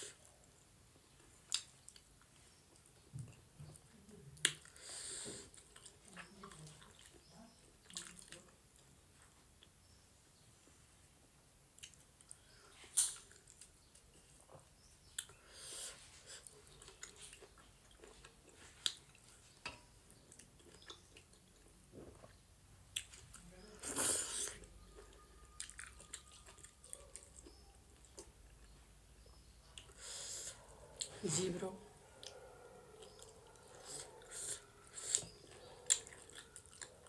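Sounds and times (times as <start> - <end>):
person chewing wet mouth sounds: 1.2 - 8.9, 15.1 - 31.2, 32.1 - 37.0.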